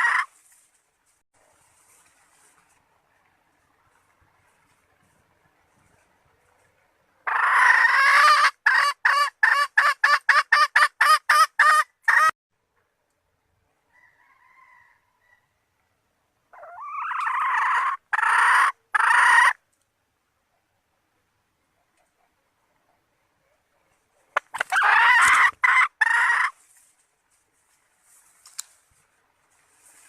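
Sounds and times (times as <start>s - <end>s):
hen calling: 0.0s - 0.4s, 24.2s - 26.7s.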